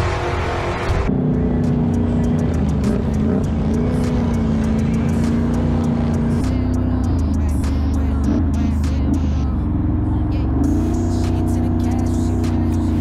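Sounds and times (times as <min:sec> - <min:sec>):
loud rushing noise: 0:00.0 - 0:01.9
atv engine running: 0:00.0 - 0:13.0.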